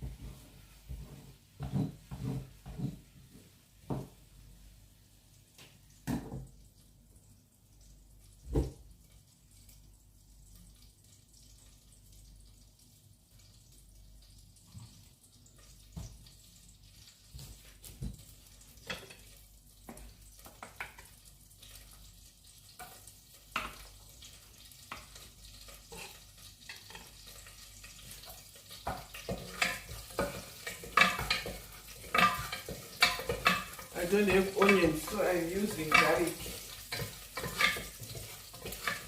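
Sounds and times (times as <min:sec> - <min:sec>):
food frying in oil: 0:00.0 - 0:39.0
utensil scraping a pan: 0:24.9 - 0:39.0.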